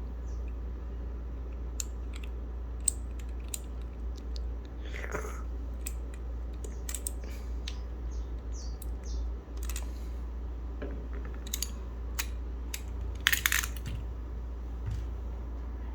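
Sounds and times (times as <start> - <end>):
steady low hum: 0.0 - 15.9
mechanical keyboard clicks: 11.3 - 14.0.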